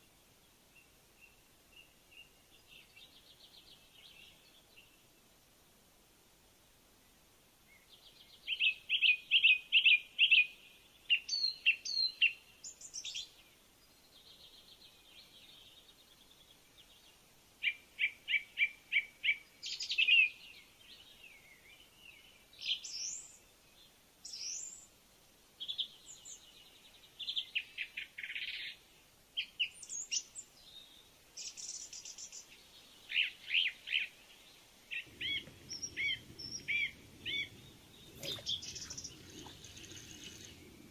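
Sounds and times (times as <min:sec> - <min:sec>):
songbird singing: 0:32.7 - 0:40.9.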